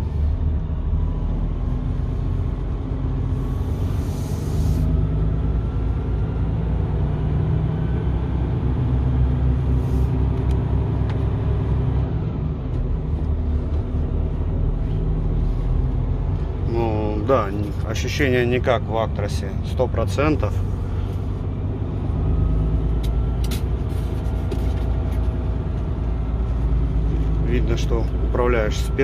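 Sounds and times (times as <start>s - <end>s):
truck diesel engine rumble: 0.0s - 29.0s.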